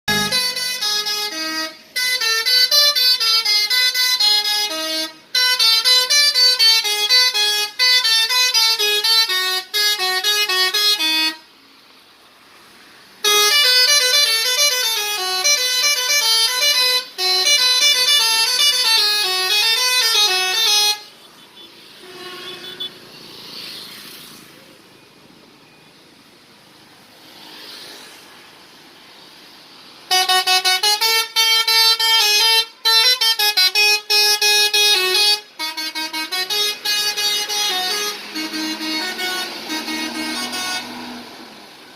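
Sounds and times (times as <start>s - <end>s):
multi-tone bus horn tune: 0.1s - 11.6s, 13.2s - 23.2s, 30.0s - 41.7s
faint background noise: 0.1s - 41.9s.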